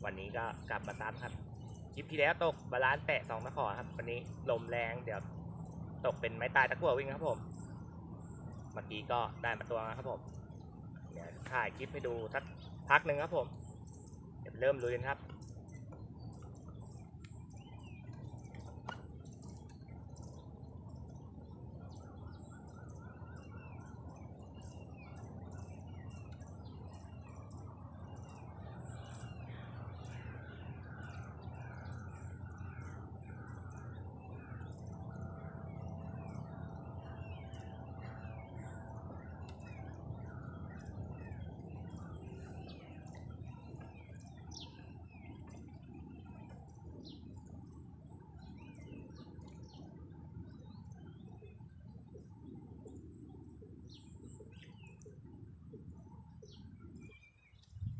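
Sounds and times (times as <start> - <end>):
birds chirping: 0.0 - 57.9
wind on microphone: 56.7 - 57.9.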